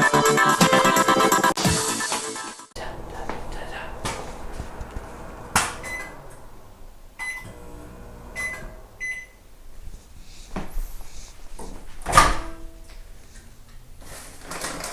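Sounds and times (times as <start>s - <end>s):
short electronic beeps: 8.4s - 9.4s.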